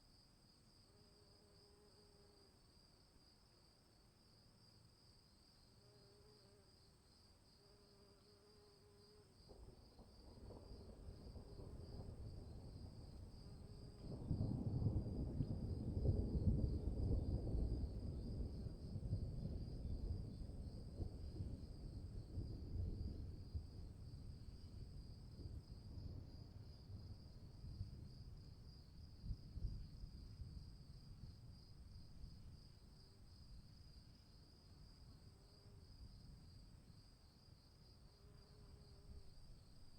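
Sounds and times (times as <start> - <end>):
crickets chirring: 0.0 - 39.9
rumble of thunder: 9.5 - 33.0.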